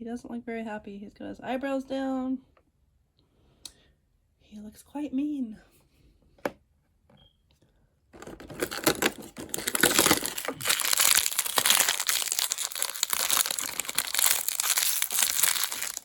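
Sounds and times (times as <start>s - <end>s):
foil bag crinkling: 8.2s - 16.0s.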